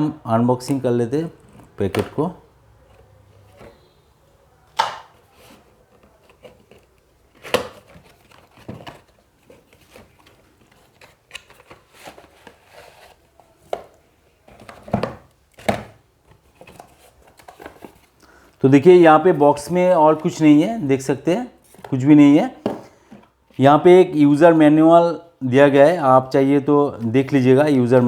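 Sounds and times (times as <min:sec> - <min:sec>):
cardboard and plastic rustling: 0:00.6 - 0:20.8, 0:21.5 - 0:23.6.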